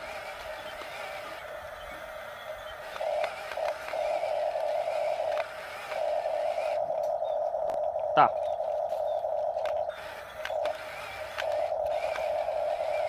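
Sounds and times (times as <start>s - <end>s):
toy electric motor whining: 0.0s - 7.1s, 9.5s - 13.0s.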